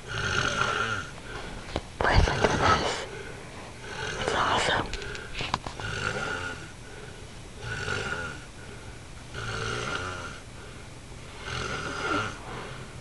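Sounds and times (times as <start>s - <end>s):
person snoring: 0.0s - 1.1s, 2.0s - 5.2s, 5.8s - 6.8s, 7.6s - 10.4s, 11.4s - 12.9s.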